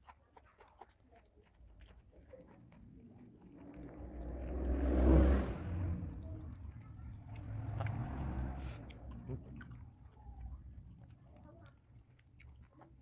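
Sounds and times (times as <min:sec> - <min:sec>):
road vehicle passing by: 0:02.4 - 0:11.6.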